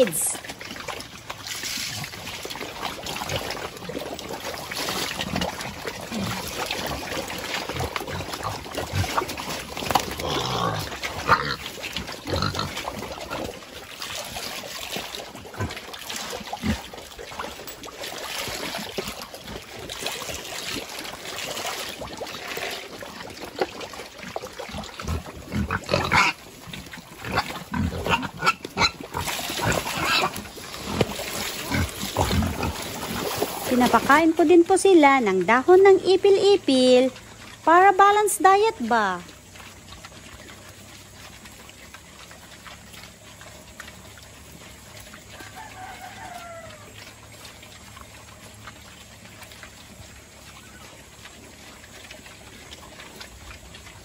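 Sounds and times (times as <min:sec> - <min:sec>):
pigs chomping and crunching: 0:00.0 - 0:54.0
pigs grunting: 0:01.8 - 0:17.7, 0:22.1 - 0:34.1.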